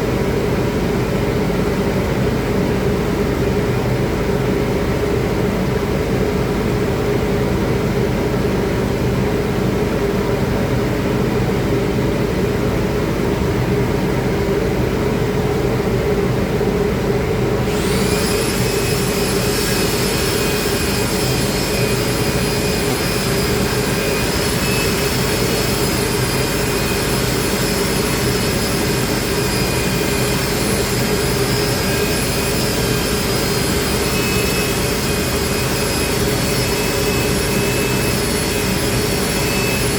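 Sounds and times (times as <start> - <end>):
loud machine drone: 10.7 - 39.9
high-pitched motor whine: 17.6 - 39.9.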